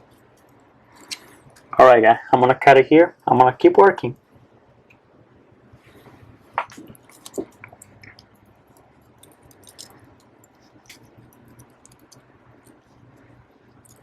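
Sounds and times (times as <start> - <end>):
tools and parts clicking: 9.2 - 12.8, 13.8 - 14.0.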